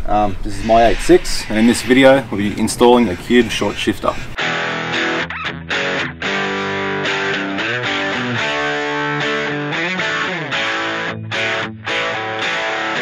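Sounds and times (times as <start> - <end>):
guitar background music: 4.4 - 13.0.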